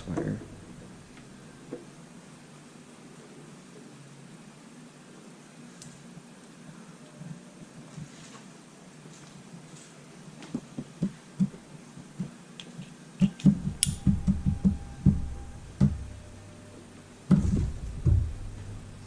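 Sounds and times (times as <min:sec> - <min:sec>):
knocks from handling tools: 0:13.2 - 0:16.1
heavy thumps: 0:13.2 - 0:16.6, 0:17.3 - 0:19.0.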